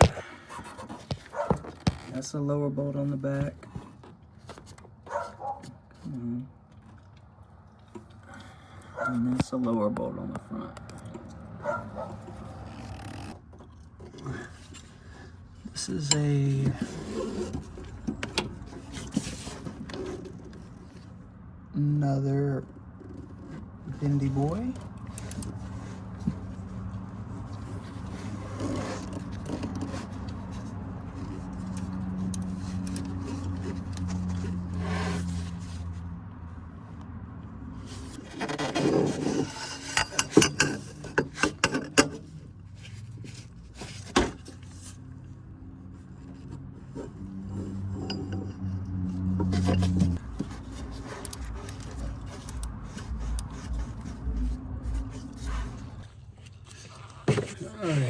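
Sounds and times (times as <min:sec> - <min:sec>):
metal scraping and rubbing: 0:15.6 - 0:21.1, 0:23.1 - 0:36.0, 0:37.8 - 0:45.0, 0:45.9 - 0:58.0.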